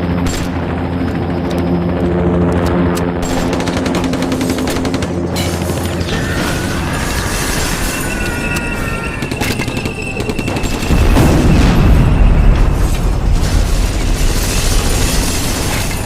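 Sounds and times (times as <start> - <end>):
booms: 10.6 - 14.9.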